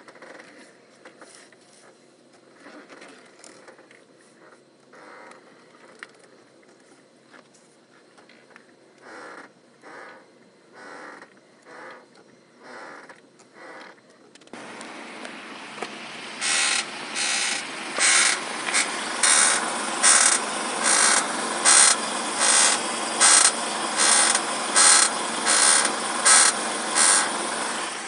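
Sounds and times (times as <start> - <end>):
steering squeaking: 14.6 - 28.0.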